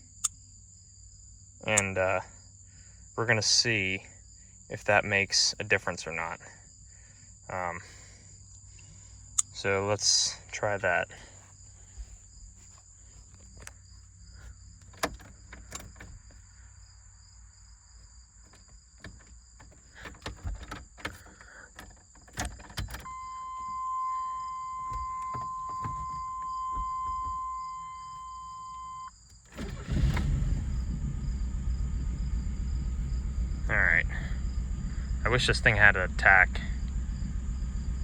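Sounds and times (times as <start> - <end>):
crickets chirping: 0.0 - 38.0
truck engine cranking and idling: 18.5 - 38.0
steady electronic beep: 23.1 - 29.1.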